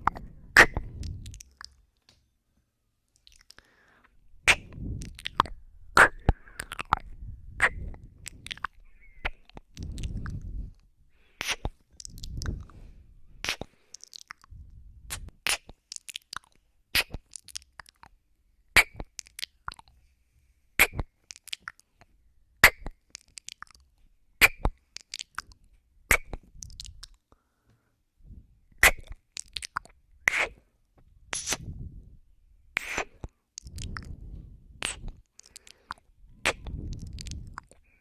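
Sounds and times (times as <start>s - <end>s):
breaths blowing on microphone: 0.0s - 1.4s, 3.7s - 13.8s, 14.5s - 15.4s, 31.3s - 38.0s
wet kisses and lip smacks: 0.0s - 1.8s, 3.2s - 3.6s, 4.5s - 7.0s, 11.4s - 12.7s, 13.4s - 14.5s, 15.1s - 18.1s, 18.8s - 19.9s, 20.8s - 21.9s, 22.6s - 23.8s, 24.4s - 27.2s, 28.8s - 30.6s, 31.3s - 31.7s, 32.8s - 34.1s, 34.8s - 37.8s.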